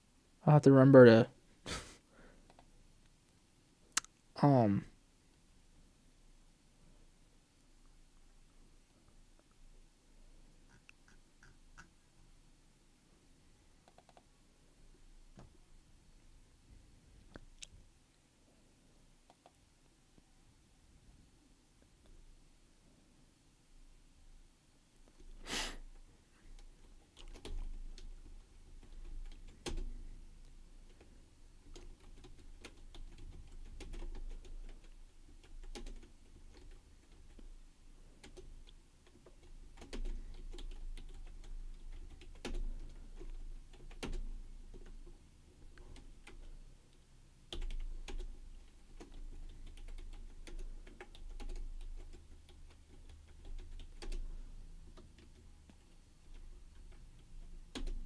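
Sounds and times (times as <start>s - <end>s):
typing on computer keyboard: 13.8s - 14.3s, 26.6s - 30.0s, 30.9s - 37.5s, 38.2s - 45.1s, 47.5s - 58.0s.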